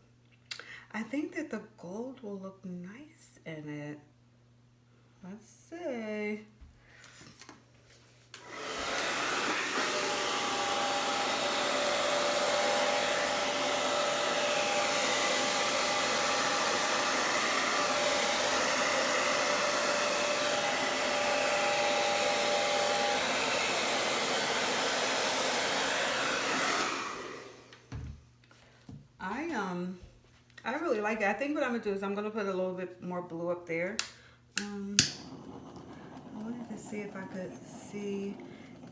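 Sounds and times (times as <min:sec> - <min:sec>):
hair dryer running: 0:08.3 - 0:28.2, 0:34.0 - 0:38.9.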